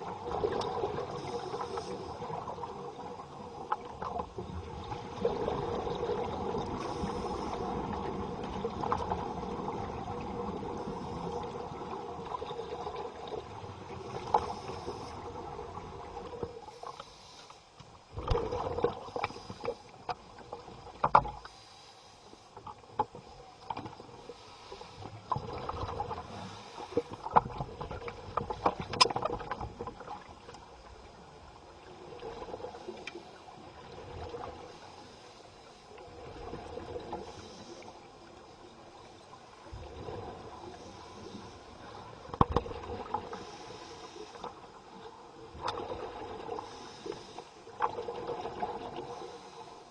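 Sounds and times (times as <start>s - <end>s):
exhaled bubbles underwater: 0.0s - 16.7s, 18.1s - 19.7s, 25.1s - 34.8s, 35.9s - 37.4s, 38.0s - 43.7s, 44.6s - 46.9s, 47.7s - 49.4s
breath hiss through regulator: 1.1s - 2.2s, 6.8s - 7.9s, 14.3s - 15.4s, 16.7s - 17.7s, 19.1s - 20.0s, 21.4s - 22.5s, 24.3s - 25.2s, 37.2s - 38.0s, 43.3s - 44.6s, 46.6s - 47.7s, 49.0s - 49.9s
underwater clicks and knocks: 17.8s - 19.4s, 20.9s - 21.5s, 27.0s - 30.6s, 42.2s - 43.3s, 45.6s - 46.1s.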